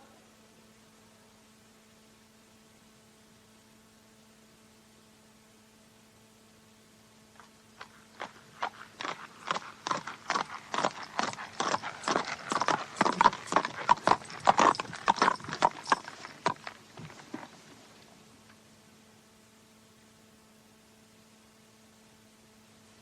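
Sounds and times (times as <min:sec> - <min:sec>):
faint hum and hiss: 0:00.0 - 0:23.0
horse hooves clip-clopping: 0:07.3 - 0:18.1.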